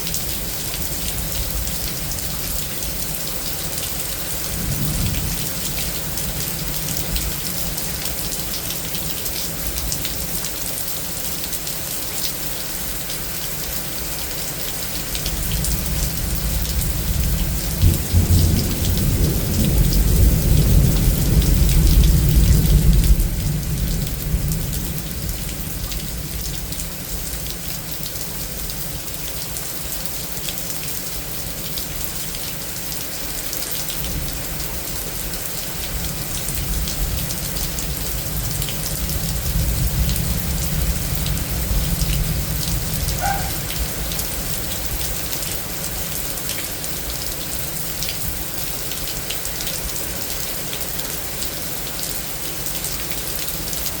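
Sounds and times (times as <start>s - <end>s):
heavy rain: 0.0s - 54.0s
thunder rumbling: 15.8s - 25.4s, 38.0s - 45.1s.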